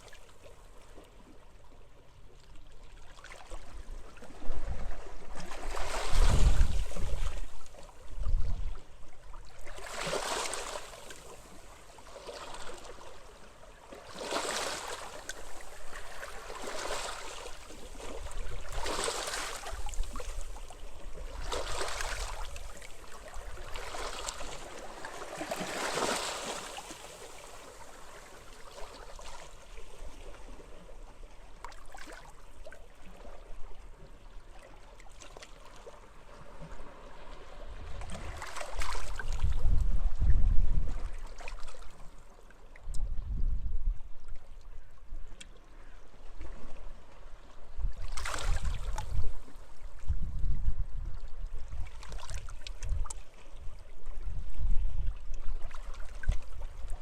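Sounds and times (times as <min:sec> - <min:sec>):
small waves washing on beach: 0:03.2 - 0:32.7, 0:34.6 - 0:39.7.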